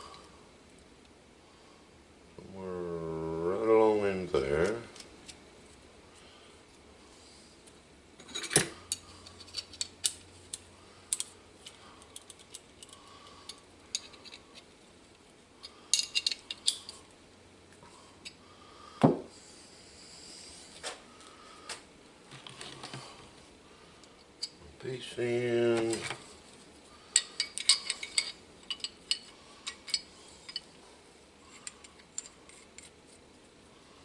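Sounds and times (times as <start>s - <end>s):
metal tools clicking and clinking: 15.9s - 17.0s, 27.1s - 30.7s.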